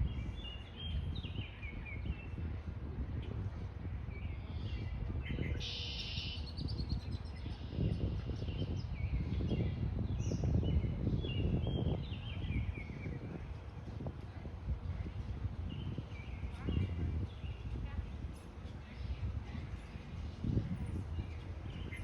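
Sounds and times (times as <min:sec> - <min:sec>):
small birds chirping: 0:04.1 - 0:13.5, 0:15.0 - 0:22.0.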